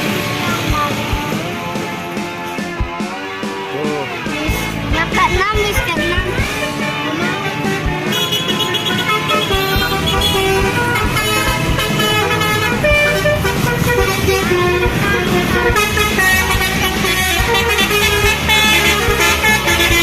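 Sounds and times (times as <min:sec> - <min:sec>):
bus engine running: 0:00.0 - 0:20.0
bus musical horn tune: 0:04.5 - 0:20.0.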